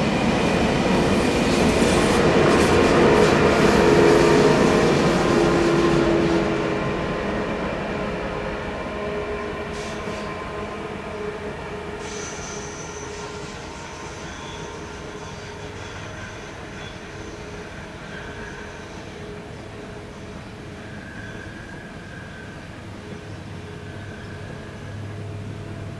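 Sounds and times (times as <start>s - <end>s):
train rumble: 0.0s - 25.9s
train wheels squealing on rails: 0.0s - 25.9s
high thin squeal: 11.8s - 19.0s.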